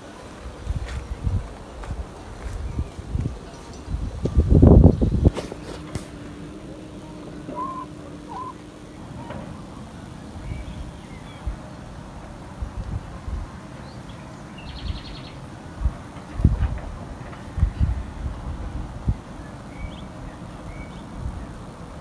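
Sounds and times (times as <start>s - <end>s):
bird calls: 2.4s - 12.2s, 13.6s - 15.5s
rapid bird trill: 6.6s - 11.6s.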